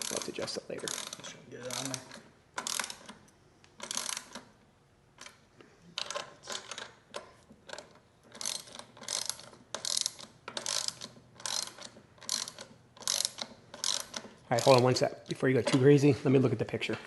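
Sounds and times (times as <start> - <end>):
ratchet wrench clicking: 0.0 - 3.2, 3.8 - 4.5, 6.0 - 15.0.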